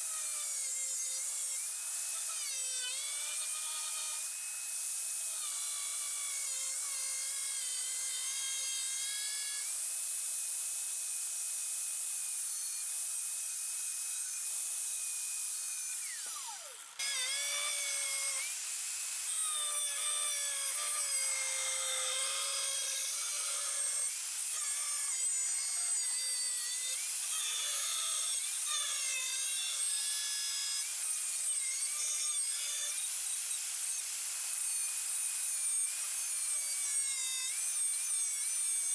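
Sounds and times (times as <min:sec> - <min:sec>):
angle grinder cutting steel: 0:15.4 - 0:38.9.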